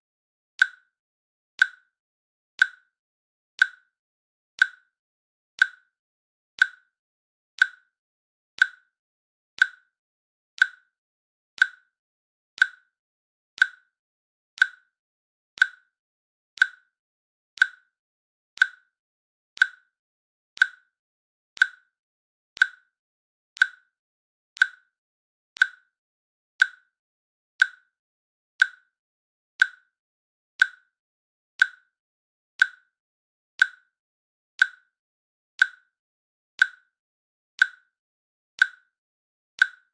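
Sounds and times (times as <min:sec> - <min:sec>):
timer clicking: 0:00.6 - 0:00.9, 0:01.6 - 0:01.9, 0:02.6 - 0:02.9, 0:03.6 - 0:03.9, 0:04.6 - 0:04.9, 0:05.6 - 0:05.9, 0:06.6 - 0:07.0, 0:07.6 - 0:08.0, 0:08.6 - 0:09.0, 0:09.6 - 0:10.0, 0:10.6 - 0:11.0, 0:11.6 - 0:12.0, 0:12.6 - 0:13.0, 0:13.6 - 0:14.0, 0:14.6 - 0:15.0, 0:15.6 - 0:16.0, 0:16.6 - 0:17.0, 0:17.6 - 0:18.0, 0:18.6 - 0:19.0, 0:19.6 - 0:20.0, 0:20.6 - 0:21.0, 0:21.6 - 0:22.0, 0:22.6 - 0:23.0, 0:23.6 - 0:24.0, 0:24.6 - 0:25.0, 0:25.6 - 0:26.0, 0:26.6 - 0:27.0, 0:27.6 - 0:28.0, 0:28.6 - 0:29.0, 0:29.6 - 0:30.0, 0:30.6 - 0:31.0, 0:31.6 - 0:32.0, 0:32.6 - 0:33.0, 0:33.6 - 0:34.0, 0:34.6 - 0:35.0, 0:35.6 - 0:36.0, 0:36.6 - 0:36.9, 0:37.6 - 0:37.9, 0:38.6 - 0:39.0, 0:39.6 - 0:39.9.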